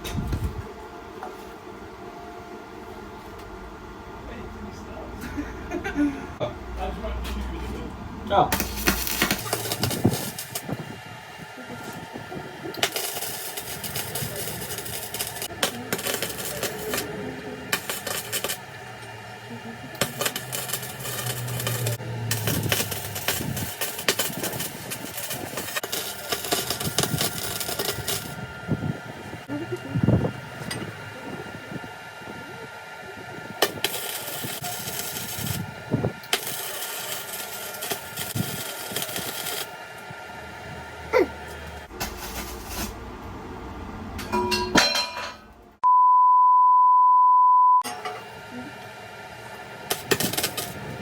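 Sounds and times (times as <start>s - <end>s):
arc welding crackling: 6.7s - 30.7s, 32.5s - 43.2s, 48.6s - 51.0s.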